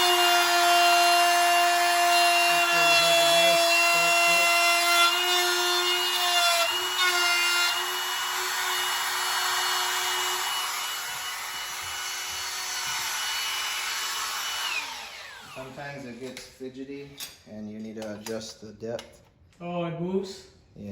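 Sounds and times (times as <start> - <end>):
router motor whine: 0.0 - 15.8
router bit cutting wood: 0.0 - 16.3.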